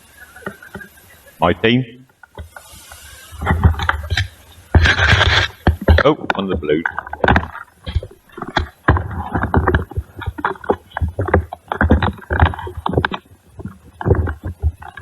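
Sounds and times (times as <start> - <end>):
muffled voices talking: 0.1 - 2.1, 6.0 - 7.0
camera handling knocks and rubbing: 3.4 - 15.0.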